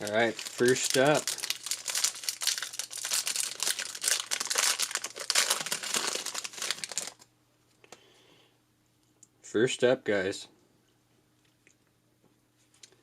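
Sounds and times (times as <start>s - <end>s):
wrapper ripping and crinkling: 0.0s - 7.2s.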